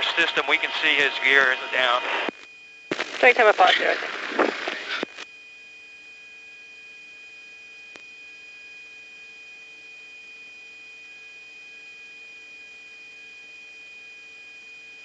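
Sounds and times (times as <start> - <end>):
faint hum: 0.0 - 5.9.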